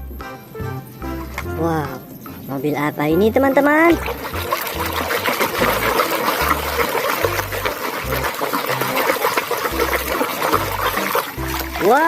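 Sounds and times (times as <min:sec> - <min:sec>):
bass-heavy background music: 0:00.0 - 0:02.5, 0:03.2 - 0:12.0
running water splashing: 0:03.2 - 0:12.0.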